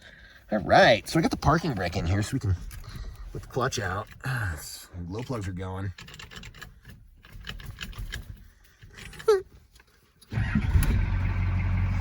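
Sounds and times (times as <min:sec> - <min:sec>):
diesel engine cranking and starting: 0:10.2 - 0:12.0.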